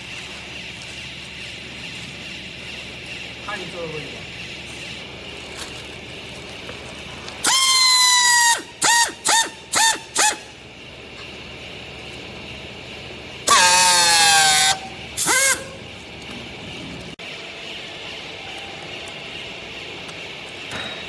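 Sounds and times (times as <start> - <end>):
high horn-like honking: 13.5 - 15.8.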